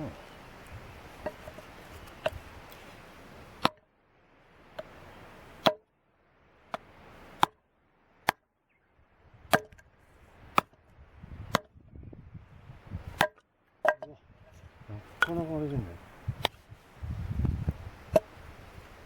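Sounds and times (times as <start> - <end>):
firewood chopping strikes: 1.2 - 2.8, 3.6 - 3.8, 4.7 - 5.0, 5.6 - 5.9, 6.7 - 7.6, 8.2 - 8.4, 9.5 - 10.8, 11.5 - 11.8, 13.2 - 14.2, 18.1 - 18.3.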